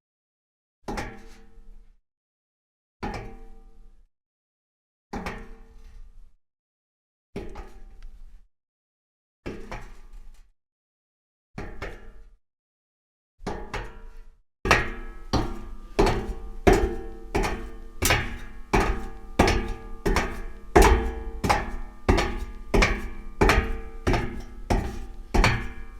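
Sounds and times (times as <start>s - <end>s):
footsteps on metal grate: 14.7s - 25.9s.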